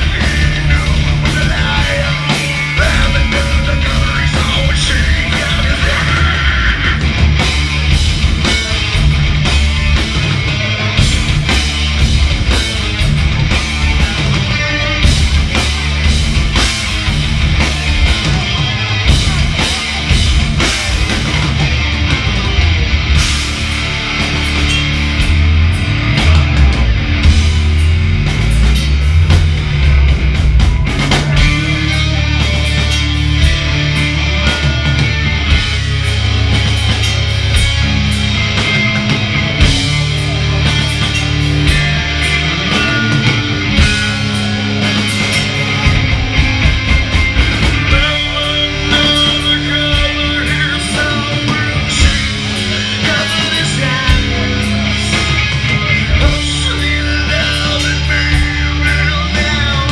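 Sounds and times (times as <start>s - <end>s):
bass notes: 0.0s - 59.9s
electric guitars: 0.0s - 59.9s.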